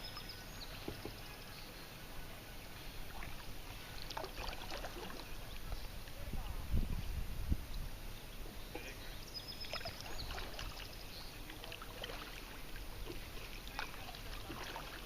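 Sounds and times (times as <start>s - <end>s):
paddle strokes splashing: 2.6s - 6.4s, 9.6s - 15.0s.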